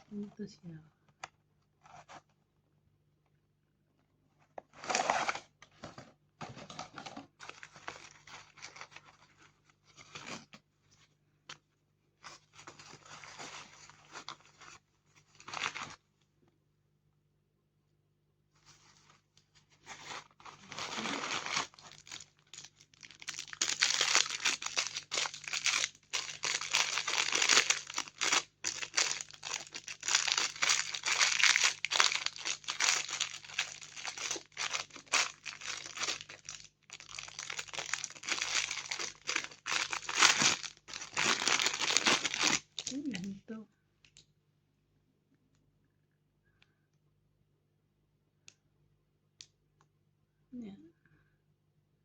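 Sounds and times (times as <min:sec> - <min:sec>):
packaging crinkling and tearing: 0:04.7 - 0:05.5, 0:06.6 - 0:10.5, 0:12.2 - 0:16.0, 0:19.8 - 0:43.3.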